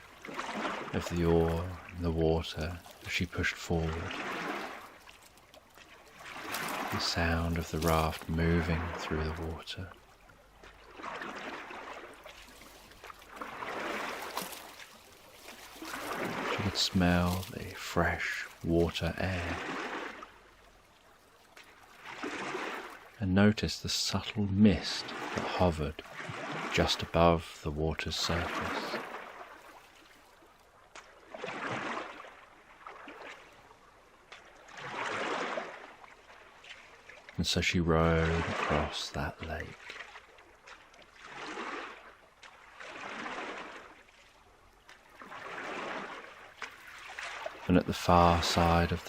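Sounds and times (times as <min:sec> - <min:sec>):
water dripping: 0:00.0 - 0:22.2
oar strokes swishing through water: 0:00.0 - 0:23.2, 0:24.0 - 0:49.0.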